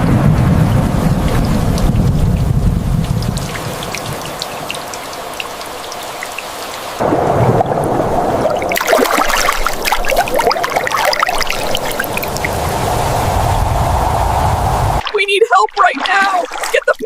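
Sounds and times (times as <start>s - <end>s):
low thunder rumble: 0.0s - 5.3s, 7.0s - 15.0s
rain falling: 0.0s - 17.0s.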